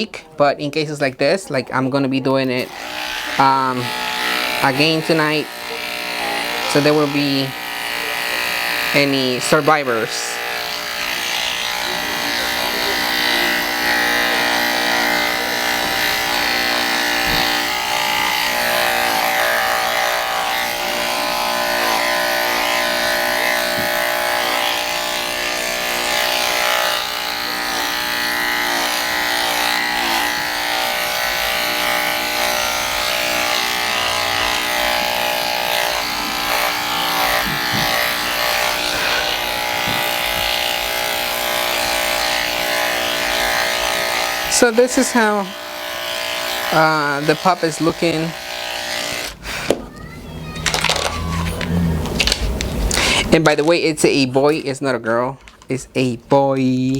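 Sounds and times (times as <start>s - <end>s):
electric clippers humming: 1.6s - 56.9s.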